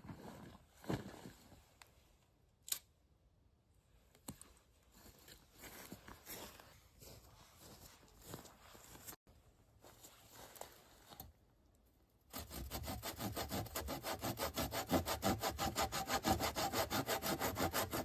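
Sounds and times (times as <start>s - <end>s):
hand saw cutting wood: 12.3s - 18.0s.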